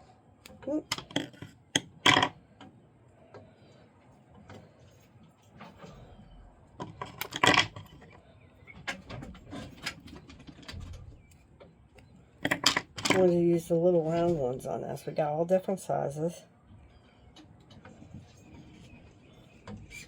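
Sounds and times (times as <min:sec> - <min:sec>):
hard objects clattering: 0:00.8 - 0:02.4, 0:06.8 - 0:08.2, 0:12.4 - 0:13.4.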